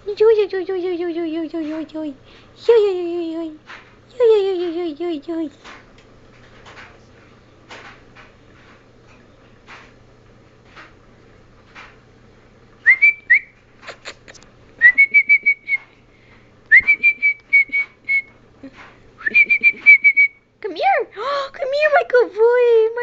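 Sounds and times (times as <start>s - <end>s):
person whistling: 12.8s - 13.5s, 14.8s - 15.9s, 16.7s - 18.3s, 19.2s - 20.4s.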